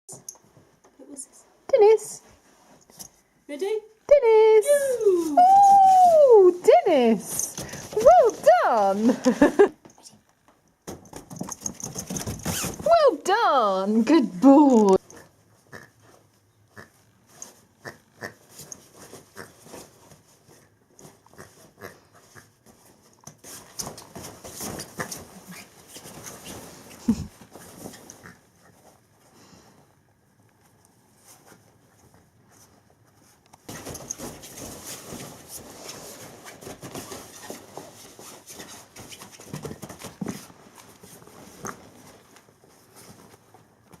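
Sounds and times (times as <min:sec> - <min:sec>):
puppy movement noise: 0:05.2 - 0:13.3, 0:16.0 - 0:29.3, 0:30.6 - 0:44.0
paws rustling in play tunnel: 0:18.4 - 0:29.8, 0:30.6 - 0:44.0.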